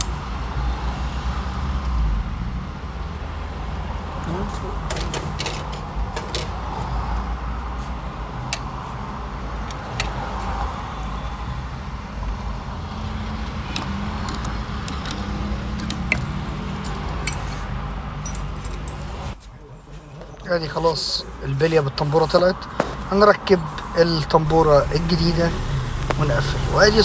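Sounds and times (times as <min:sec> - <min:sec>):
metallic clicks and clinks: 0:13.5 - 0:19.4
steady low rumble: 0:20.5 - 0:27.0.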